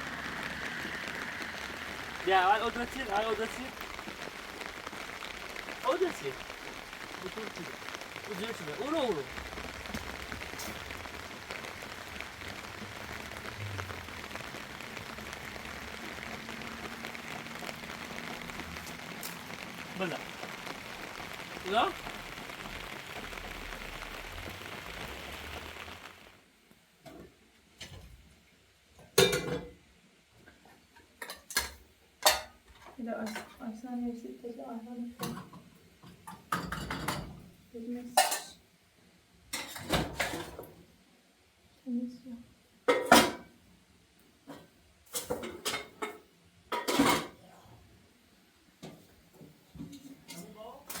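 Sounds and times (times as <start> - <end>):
steady rushing hiss: 0.0 - 26.5.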